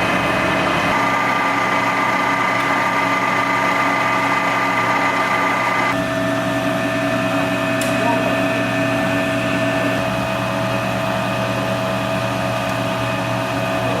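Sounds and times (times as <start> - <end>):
lathe whining: 0.1 - 6.3.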